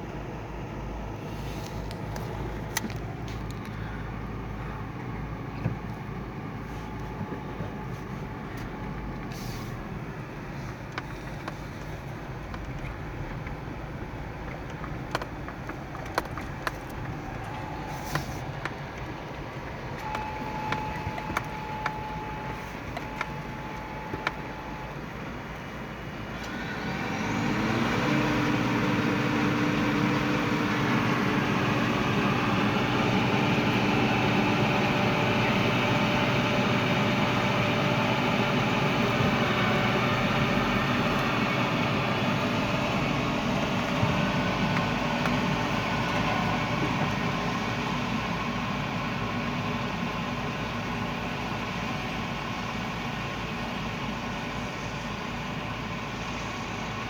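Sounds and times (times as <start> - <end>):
farm machinery engine running: 0.0 - 57.0
clicks: 14.4 - 25.7.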